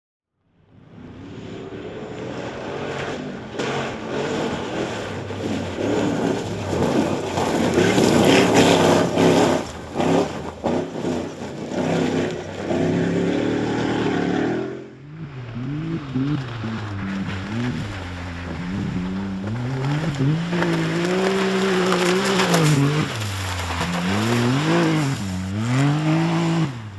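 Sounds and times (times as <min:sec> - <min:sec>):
rally car engines revving: 0:00.7 - 0:26.9.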